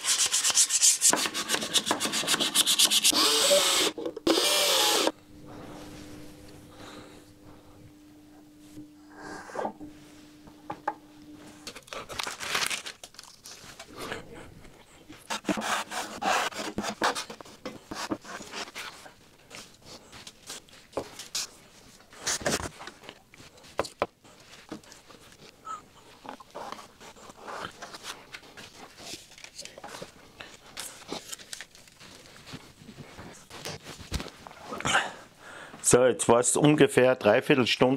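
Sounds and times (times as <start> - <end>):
rubbing and scraping: 0.0 - 3.1, 13.4 - 22.8
low hum: 5.2 - 12.0, 13.8 - 15.1.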